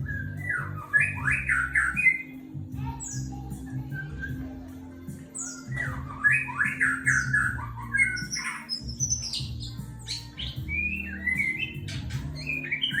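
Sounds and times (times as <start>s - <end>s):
bird singing whistled phrases: 0.0s - 2.4s, 5.4s - 9.4s, 10.7s - 13.0s
background music of low tones: 0.0s - 13.0s.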